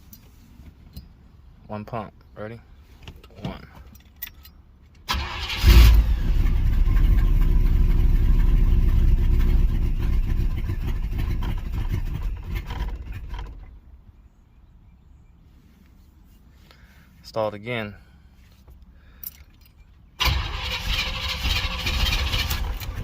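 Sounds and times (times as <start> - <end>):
engine starter cranking: 5.1 - 7.5, 20.2 - 23.0
car engine running: 6.2 - 13.8.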